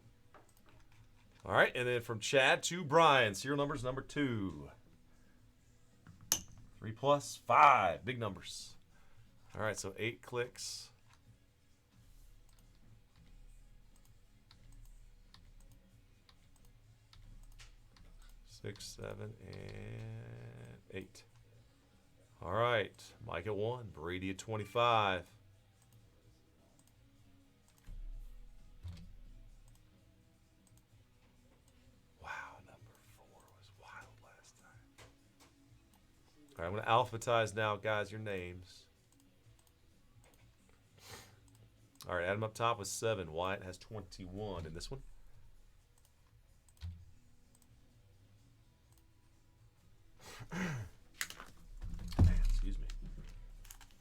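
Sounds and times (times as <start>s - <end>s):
click: 26.8s - 27.0s, 29.6s - 29.8s, 30.6s - 30.8s, 39.1s - 40.5s, 41.5s - 42.1s, 46.0s - 47.7s
faint scattered clicks: 52.6s - 54.0s.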